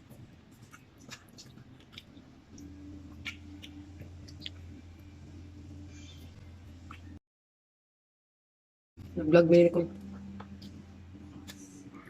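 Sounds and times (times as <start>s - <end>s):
chewing crispy fried chicken: 0.0s - 4.8s
low steady hum: 0.0s - 7.2s, 9.0s - 12.0s.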